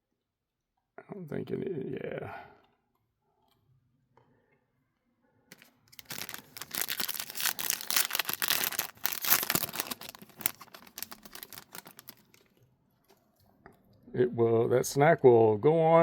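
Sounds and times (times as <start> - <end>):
plastic wrapper crinkling: 5.5 - 12.6.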